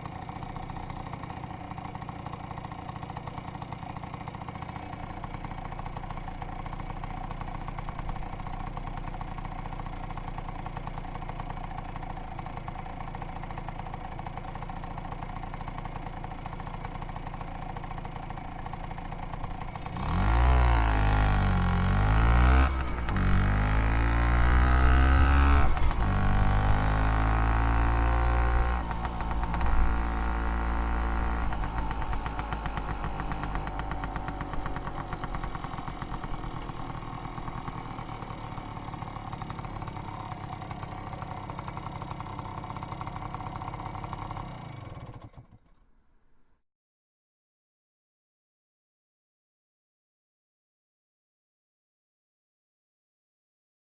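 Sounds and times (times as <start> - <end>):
scooter engine idling and revving: 0.0 - 46.0.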